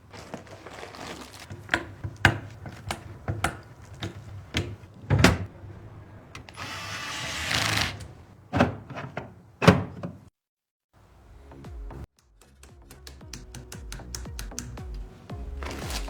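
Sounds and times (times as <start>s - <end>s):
scraping rustle: 0.0s - 9.4s, 15.3s - 16.0s.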